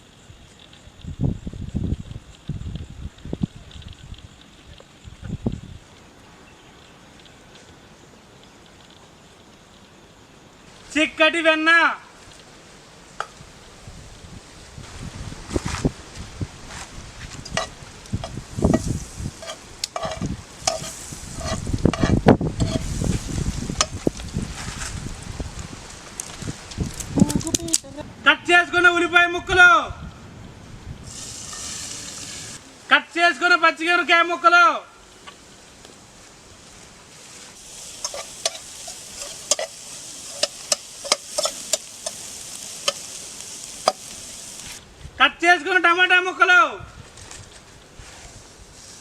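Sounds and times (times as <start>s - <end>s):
butter sizzling in a pan: 17.4s - 25.2s, 31.0s - 32.6s, 37.2s - 44.8s
metal spoon clinking and scraping: 17.5s - 22.9s, 37.9s - 43.2s.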